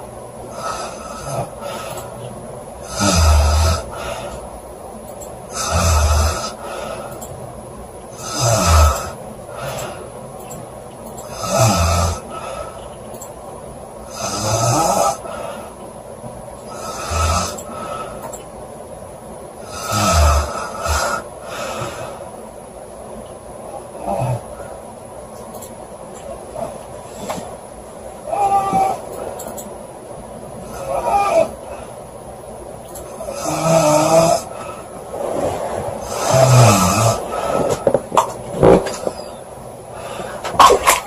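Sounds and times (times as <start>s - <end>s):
soft breathing: 0.4s - 4.7s, 5.5s - 7.4s, 8.2s - 10.3s, 11.2s - 13.1s, 15.2s - 16.0s, 16.6s - 18.4s, 20.4s - 22.5s, 34.4s - 40.6s
woman snoring loudly: 0.5s - 1.9s, 2.8s - 4.4s, 5.5s - 6.8s, 8.2s - 9.8s, 11.3s - 12.6s, 14.1s - 15.5s, 16.7s - 18.1s, 19.6s - 22.1s, 30.6s - 31.5s, 33.2s - 34.8s, 36.0s - 37.8s.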